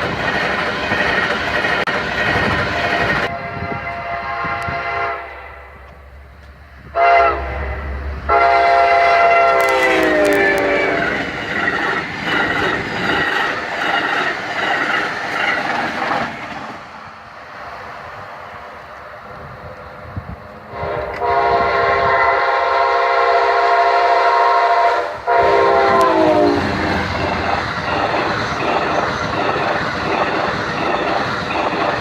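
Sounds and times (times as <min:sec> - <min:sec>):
train wheels clattering over rails: 0:00.0 - 0:03.3, 0:09.5 - 0:17.0, 0:25.6 - 0:32.0
locomotive air horn blasts: 0:03.3 - 0:05.8, 0:06.9 - 0:11.1, 0:20.7 - 0:27.0.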